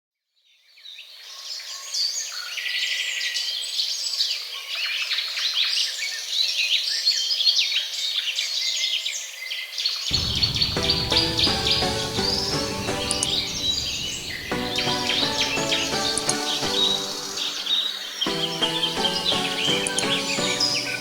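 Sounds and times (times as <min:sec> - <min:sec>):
birds chirping: 0:10.1 - 0:21.0.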